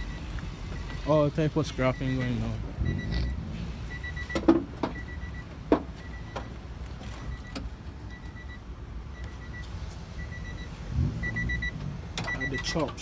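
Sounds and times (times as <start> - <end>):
car warning chime beeping: 0.0 - 13.0
low rumble: 2.5 - 4.3.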